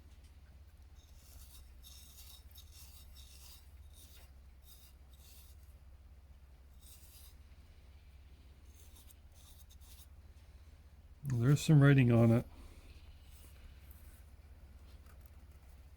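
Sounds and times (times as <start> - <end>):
scratching on pocket watch: 0.9 - 5.8, 6.7 - 7.6, 8.6 - 10.2.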